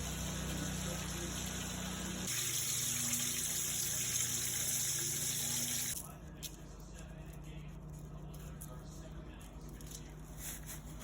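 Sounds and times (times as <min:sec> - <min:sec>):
water running from tap: 0:00.0 - 0:06.0.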